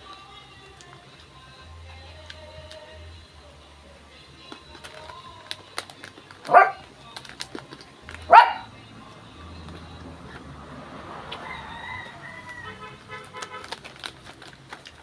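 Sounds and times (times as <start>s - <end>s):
dog barking: 6.5s - 6.8s, 8.3s - 8.7s.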